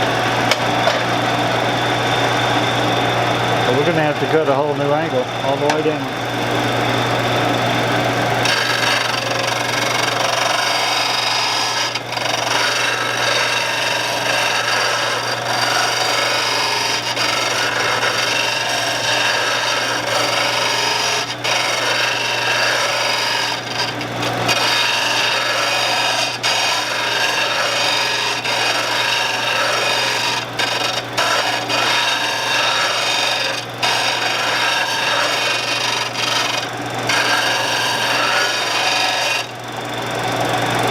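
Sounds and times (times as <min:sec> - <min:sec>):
gouge grinding on abrasive: 0:00.0 - 0:40.2
motor humming: 0:00.0 - 0:40.9.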